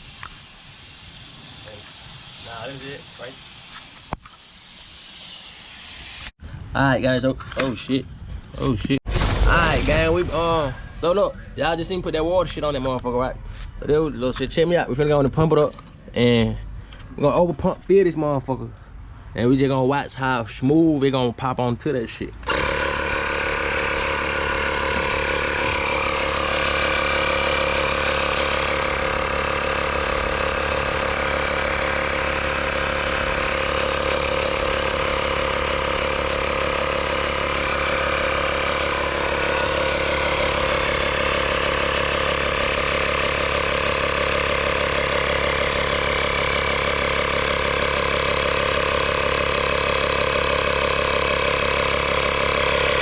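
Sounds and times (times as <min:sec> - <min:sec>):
air compressor motor running: 0:22.5 - 0:53.0.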